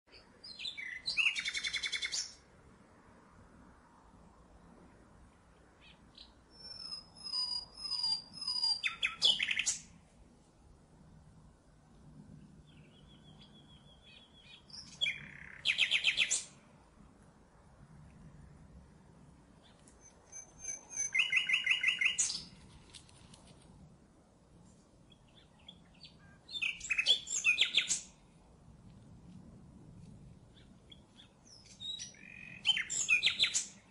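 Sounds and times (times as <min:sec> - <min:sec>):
nightingale singing trills: 0:00.1 - 0:02.4, 0:05.6 - 0:10.0, 0:12.6 - 0:16.6, 0:19.6 - 0:22.6, 0:25.1 - 0:28.2, 0:30.4 - 0:33.9.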